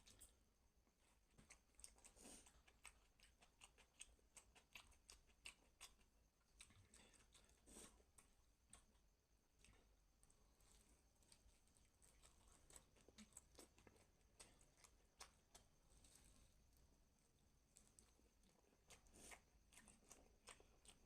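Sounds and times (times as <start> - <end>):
chewing mouth sounds: 1.3 - 9.0, 11.2 - 16.2, 17.7 - 21.0.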